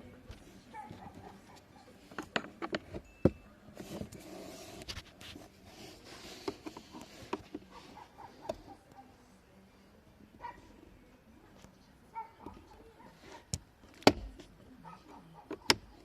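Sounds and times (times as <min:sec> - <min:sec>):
soft rustling: 0:03.6 - 0:09.2.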